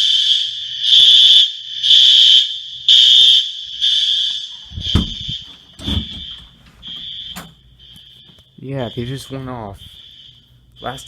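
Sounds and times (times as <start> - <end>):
fire alarm pulsing: 0.0 - 11.0
dull thumps: 4.8 - 7.6.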